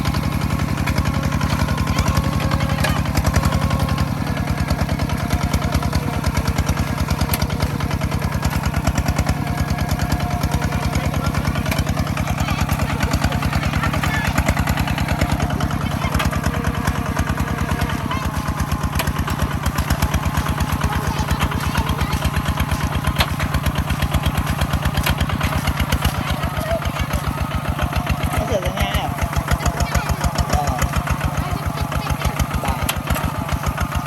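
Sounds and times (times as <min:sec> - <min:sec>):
farm machine engine running: 0:00.0 - 0:34.0.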